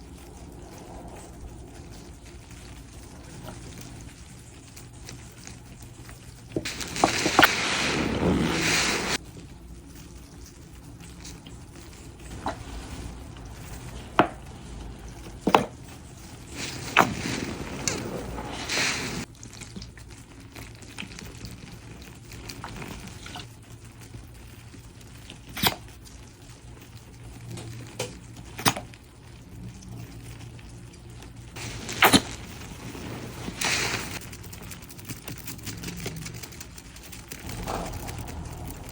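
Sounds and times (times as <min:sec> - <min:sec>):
foam popping and crackling: 0:00.0 - 0:38.9
wet sponge squelching: 0:06.6 - 0:09.3, 0:10.8 - 0:19.3.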